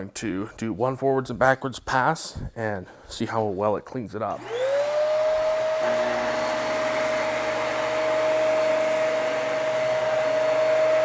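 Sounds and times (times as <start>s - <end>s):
vacuum cleaner running on carpet: 4.4s - 11.0s.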